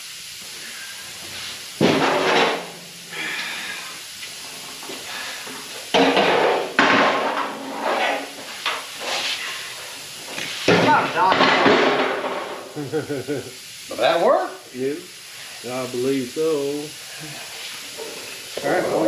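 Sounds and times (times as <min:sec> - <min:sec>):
scrap sheet metal clattering: 0:01.8 - 0:03.2, 0:05.9 - 0:09.6, 0:10.2 - 0:12.7.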